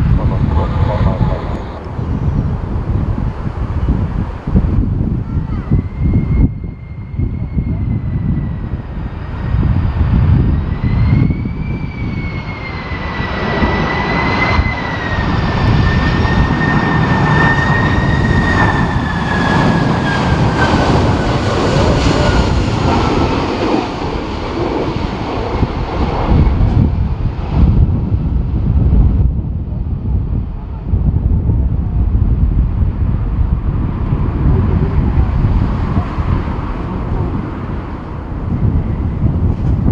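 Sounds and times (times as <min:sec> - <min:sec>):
jet rush: 0:00.0 - 0:06.4, 0:32.6 - 0:39.9
jet engine whine: 0:00.0 - 0:39.9
wind buffeting microphone: 0:00.0 - 0:39.9.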